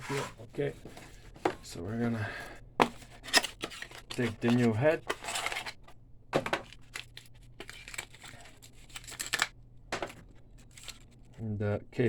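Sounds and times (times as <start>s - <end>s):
packaging crinkling: 6.7s - 9.5s.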